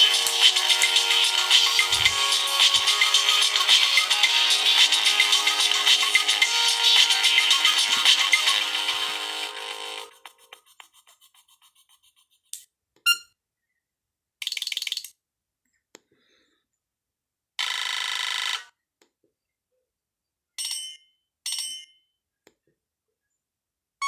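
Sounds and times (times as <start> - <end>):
mobile phone ringtone snippets: 0.0 - 10.4.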